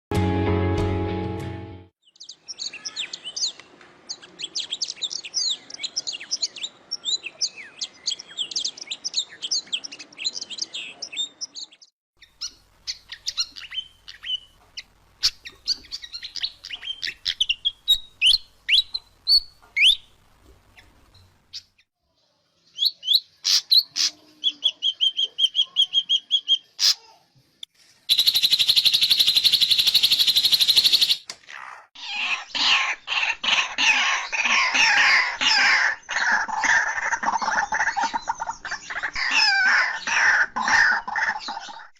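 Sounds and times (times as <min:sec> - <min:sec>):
bird chattering high notes: 0:28.1 - 0:31.2
bird whistled notes: 0:28.1 - 0:31.2
bird short calls and trill: 0:28.1 - 0:40.3.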